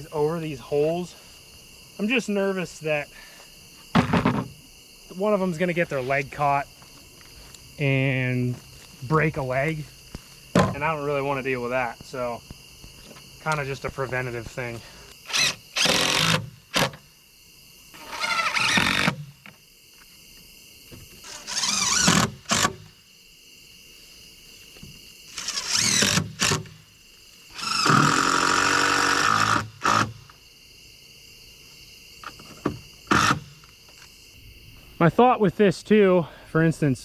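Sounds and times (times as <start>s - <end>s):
cordless drill driving screws: 15.3s - 17.0s, 18.0s - 19.2s, 21.2s - 22.8s, 25.3s - 26.7s, 27.5s - 30.1s, 33.1s - 33.4s.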